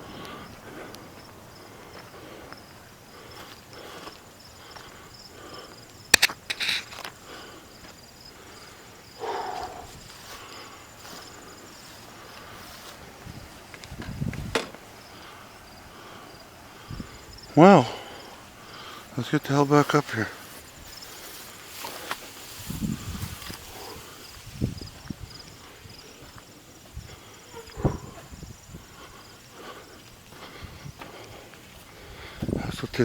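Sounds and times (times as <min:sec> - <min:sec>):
footsteps outdoors: 0:00.0 - 0:33.0
insects chirping: 0:00.0 - 0:33.0
sharp clatter of clicks: 0:06.1 - 0:07.1.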